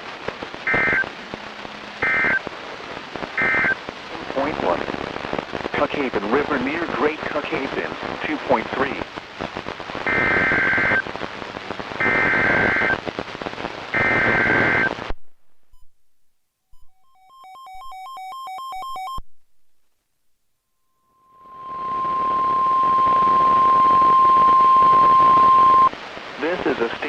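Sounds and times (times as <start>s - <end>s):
radio static: 0.0s - 15.2s, 21.3s - 27.0s
alternating two-note electronic beeps: 16.8s - 19.2s
steady warning alarm tone: 16.8s - 19.2s.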